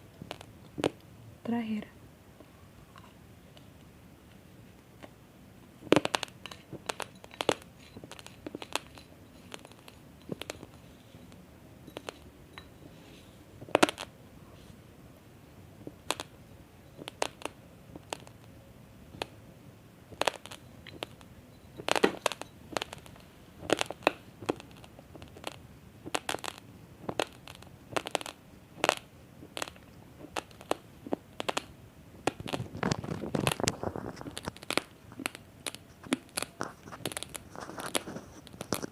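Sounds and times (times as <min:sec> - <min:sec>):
rice grains crunching: 0:05.8 - 0:12.3, 0:13.6 - 0:14.1, 0:15.8 - 0:16.4, 0:17.0 - 0:18.4, 0:20.1 - 0:38.9.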